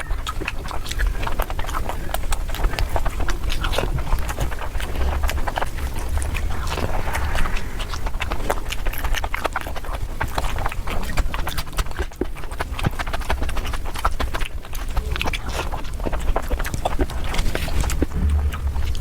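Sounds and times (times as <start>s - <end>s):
low steady rumble: 3.9s - 9.7s, 17.5s - 19.0s
person chewing with wet smacking: 10.9s - 18.9s.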